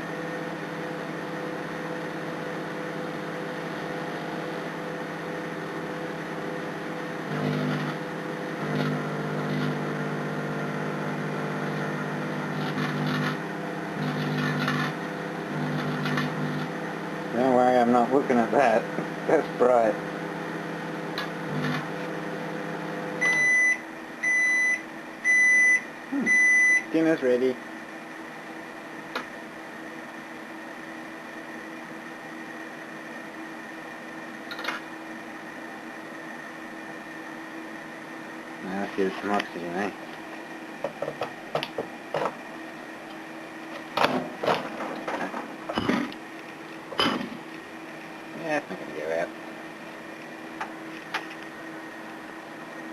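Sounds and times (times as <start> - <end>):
microwave oven humming: 0.0 - 52.9
microwave beeps: 23.2 - 27.0.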